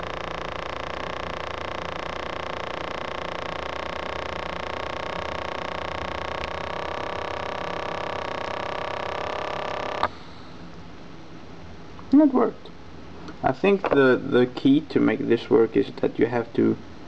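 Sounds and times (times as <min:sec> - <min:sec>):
small electric air pump whining: 0:00.0 - 0:10.4.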